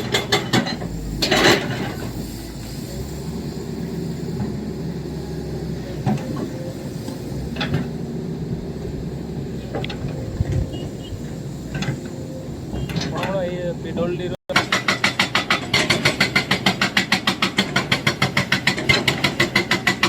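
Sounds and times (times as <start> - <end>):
metal clanks: 0.0 - 2.3
excavator diesel engine running: 0.0 - 20.0.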